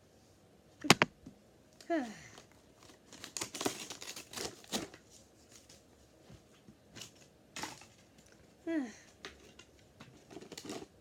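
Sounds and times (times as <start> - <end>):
packaging crinkling and tearing: 2.8 - 4.9.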